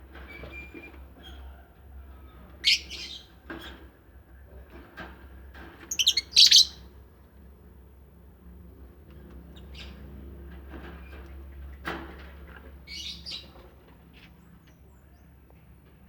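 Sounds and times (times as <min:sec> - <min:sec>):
lovebirds chirping: 0:02.6 - 0:03.3, 0:05.9 - 0:06.9.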